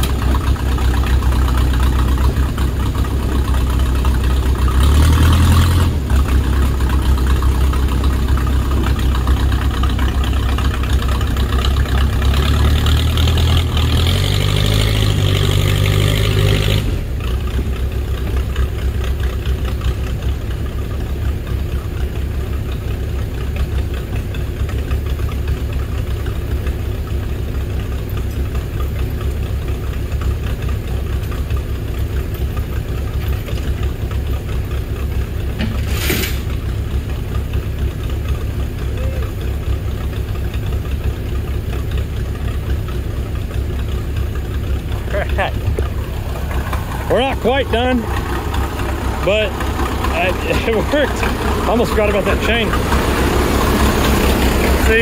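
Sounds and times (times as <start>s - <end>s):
heavy equipment engine: 0.0s - 55.0s.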